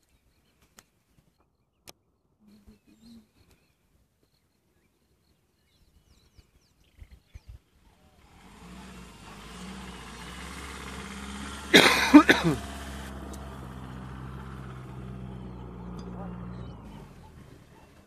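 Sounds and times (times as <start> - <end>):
faint bird chirps: 0.0 - 8.3
vehicle engine humming: 8.0 - 18.0.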